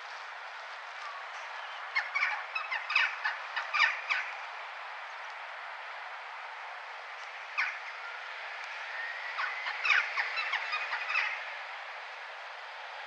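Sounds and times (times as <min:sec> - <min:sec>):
town background hum: 0:00.0 - 0:13.0.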